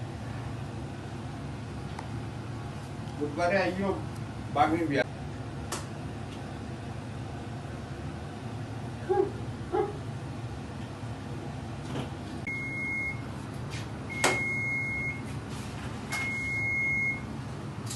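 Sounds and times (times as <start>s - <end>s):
steady low hum: 0.0s - 17.9s
appliance beeps: 12.5s - 13.3s, 14.1s - 15.3s, 16.1s - 17.3s.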